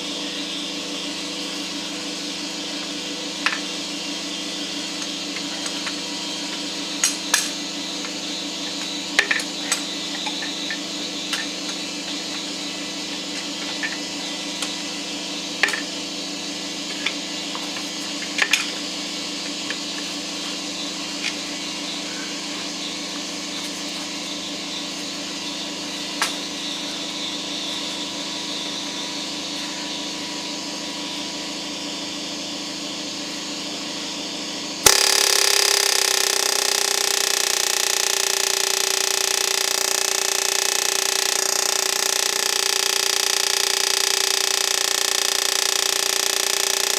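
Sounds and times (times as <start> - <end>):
steady hum: 0.0 - 46.9.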